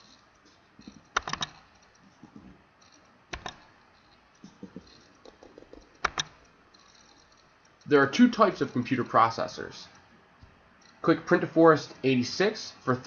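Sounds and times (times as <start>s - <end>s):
computer mouse clicks: 0.0s - 2.2s, 2.8s - 7.9s.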